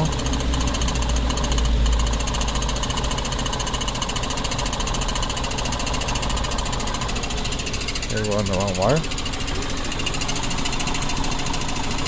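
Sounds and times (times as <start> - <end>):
car engine idling with ticking: 0.0 - 12.0.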